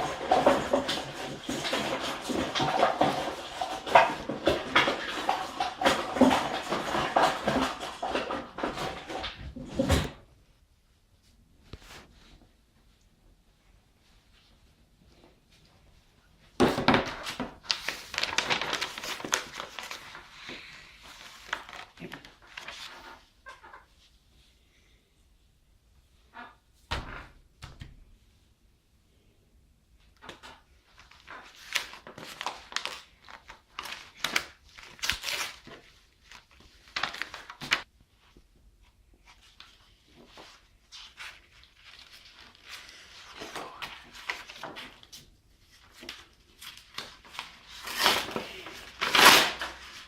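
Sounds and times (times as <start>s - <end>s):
objects rustling and scraping: 0.0s - 10.4s, 11.2s - 13.0s, 14.0s - 24.9s, 30.3s - 50.0s
crinkling crackles: 16.9s - 23.8s, 30.2s - 38.5s.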